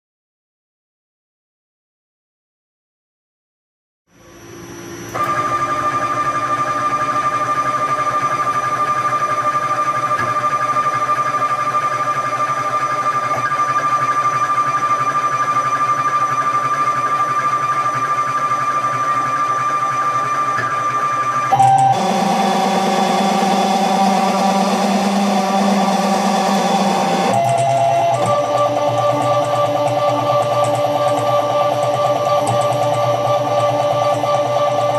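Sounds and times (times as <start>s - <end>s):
stepper motors whining: 21.4s - 34.9s.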